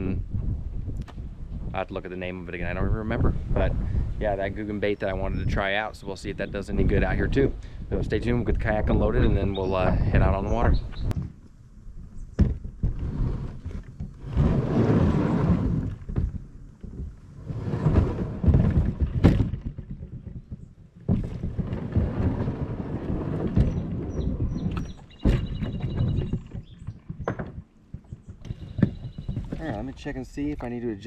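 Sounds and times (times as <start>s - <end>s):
wind rumble on microphone: 0.0s - 31.0s
thuds and knocks from kayak hull: 12.3s - 29.9s.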